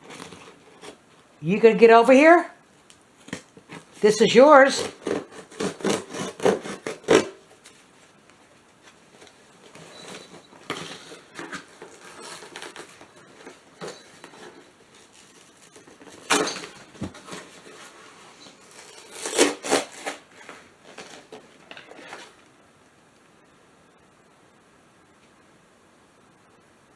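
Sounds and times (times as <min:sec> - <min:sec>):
packaging rustling: 0:00.0 - 0:01.4, 0:02.8 - 0:22.6
small items clicking and clattering: 0:09.2 - 0:22.4.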